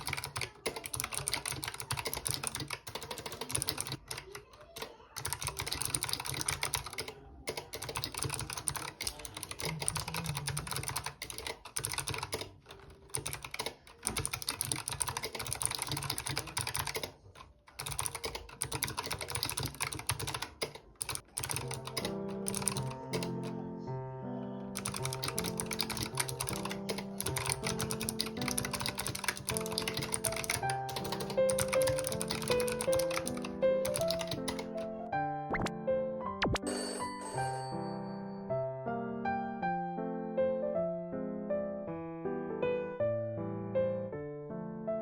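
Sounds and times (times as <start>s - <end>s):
mechanical keyboard typing: 0.0s - 23.7s, 24.7s - 35.7s
background music: 21.4s - 45.0s.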